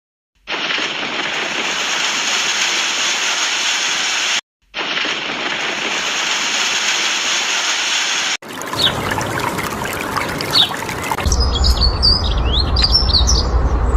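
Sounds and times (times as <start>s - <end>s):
rushing water: 0.5s - 11.5s.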